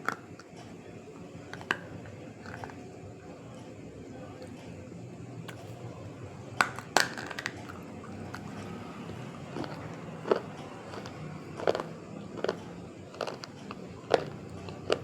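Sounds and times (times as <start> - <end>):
brittle food crunching: 1.4 - 2.8, 6.6 - 15.0.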